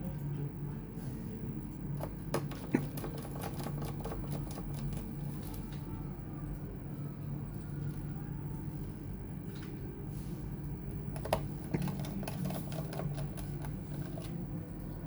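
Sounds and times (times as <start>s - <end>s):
light clicks and taps: 2.0s - 5.8s, 11.1s - 15.0s.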